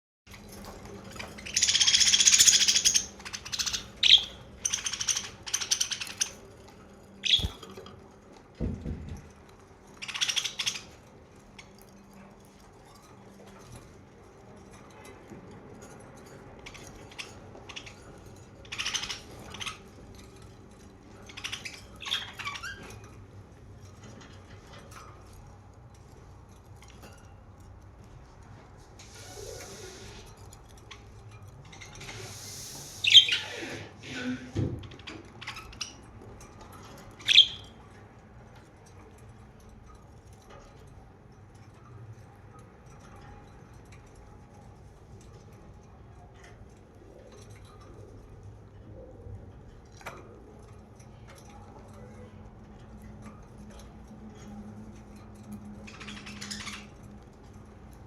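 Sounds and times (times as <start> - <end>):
budgerigars chirping: 1.4 - 6.4, 7.2 - 7.6, 10.0 - 11.0, 21.3 - 22.8, 32.9 - 33.7, 37.2 - 37.8.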